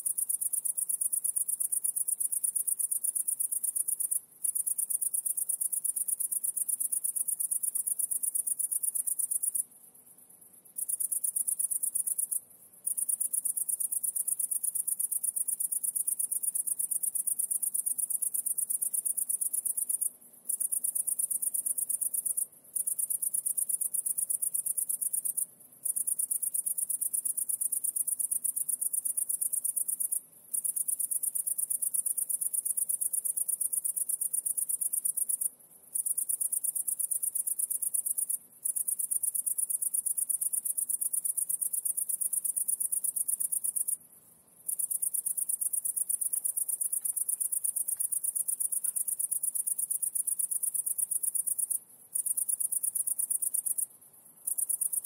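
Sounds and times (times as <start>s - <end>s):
high-pitched insect trill: 44.7s - 55.0s.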